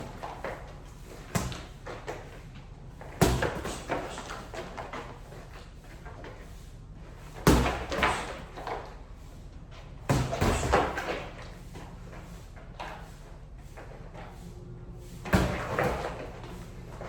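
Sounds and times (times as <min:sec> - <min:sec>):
punches landing: 0:03.0 - 0:04.8, 0:07.4 - 0:08.8, 0:09.9 - 0:11.6, 0:15.2 - 0:17.0.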